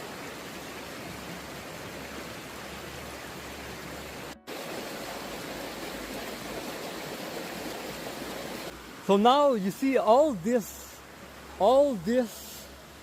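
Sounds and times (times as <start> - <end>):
stream water rushing: 0.0 - 13.0.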